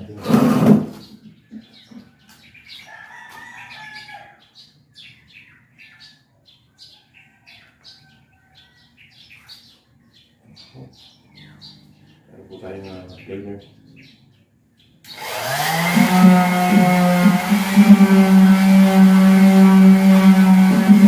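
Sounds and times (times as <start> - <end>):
small birds chirping: 0.0 - 15.6.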